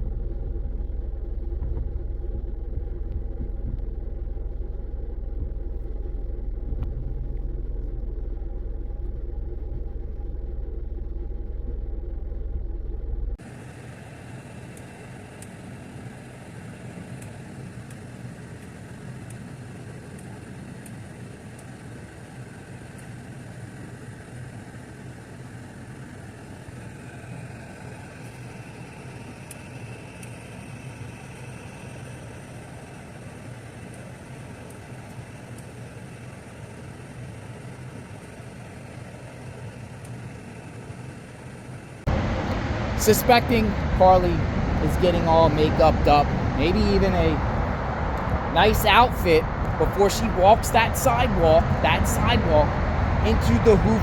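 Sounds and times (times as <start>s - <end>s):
car engine idling: 0.0s - 14.0s, 39.6s - 54.0s.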